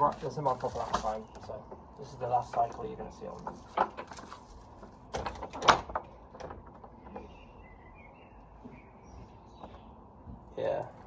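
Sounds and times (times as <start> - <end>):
birds chirping faintly: 0.0 - 11.0
gate clattering knocks: 5.1 - 7.3.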